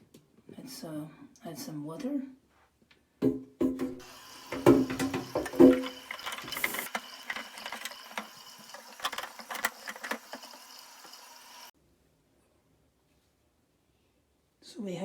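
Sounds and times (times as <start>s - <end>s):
water running into plastic tank: 4.0s - 11.7s
plastic clicks and knocks: 4.6s - 10.6s.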